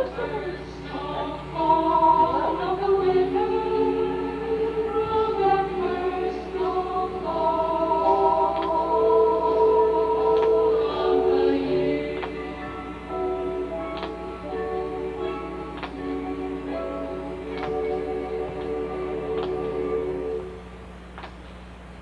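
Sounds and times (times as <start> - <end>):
choir singing a carol: 0.0 - 21.1.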